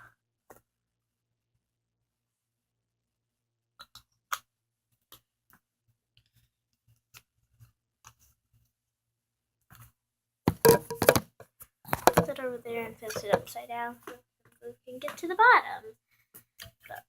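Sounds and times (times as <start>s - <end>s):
handling clatter: 10.5s - 11.3s
plastic bottle clicks and taps: 10.5s - 11.3s, 11.9s - 12.4s, 13.1s - 13.5s.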